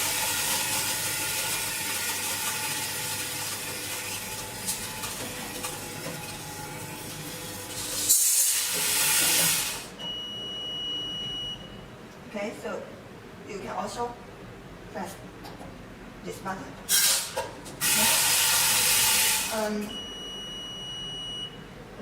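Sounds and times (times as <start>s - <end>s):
faint motor hum: 0.0s - 16.9s.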